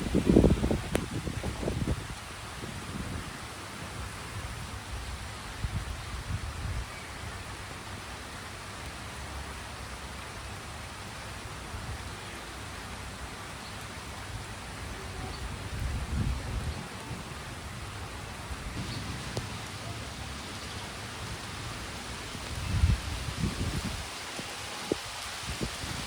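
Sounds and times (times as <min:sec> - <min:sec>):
steady rain falling: 0:00.0 - 0:26.0
thunder rumbling: 0:18.5 - 0:20.4.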